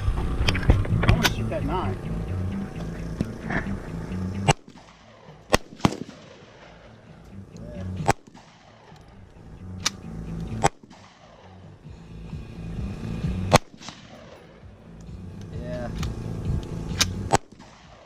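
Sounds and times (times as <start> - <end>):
low rumble: 0.0 - 18.0
gunshots: 4.4 - 7.0, 7.9 - 11.8, 13.5 - 14.7, 17.0 - 18.0.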